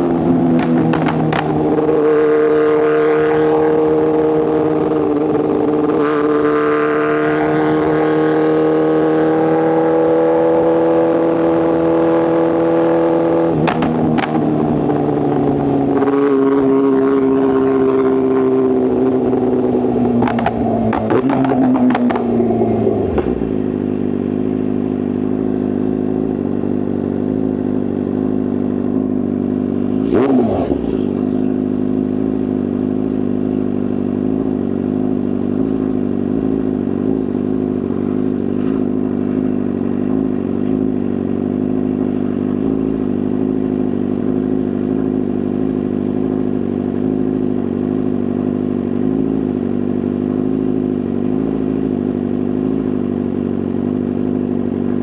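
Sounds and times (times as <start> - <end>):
motorcycle engine idling: 0.0 - 6.4, 7.5 - 55.0
throttle blip: 13.6 - 14.8.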